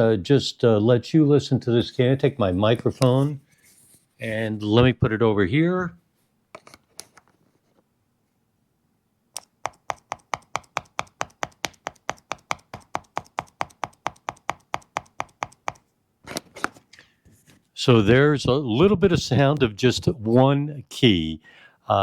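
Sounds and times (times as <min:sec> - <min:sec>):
keyboard key clacking: 0:09.4 - 0:15.8.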